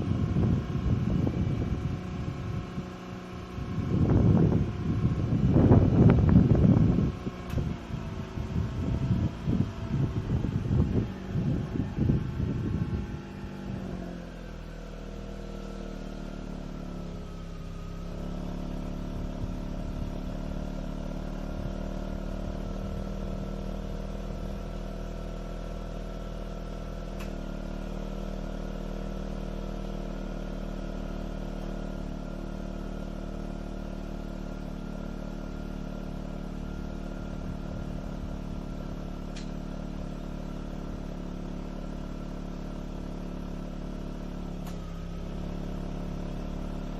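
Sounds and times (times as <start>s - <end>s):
wind noise on microphone: 0.0s - 14.2s
rotary engine idling: 0.0s - 46.9s.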